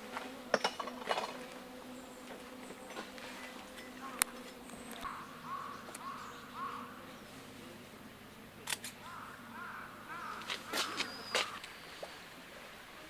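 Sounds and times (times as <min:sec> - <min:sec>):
sharp clicks: 0:08.6 - 0:09.0.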